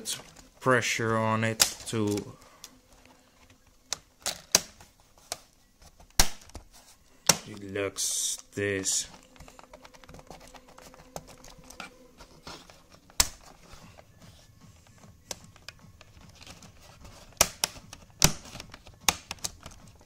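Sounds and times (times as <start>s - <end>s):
plastic keyboard clicks and taps: 14.8s - 20.0s.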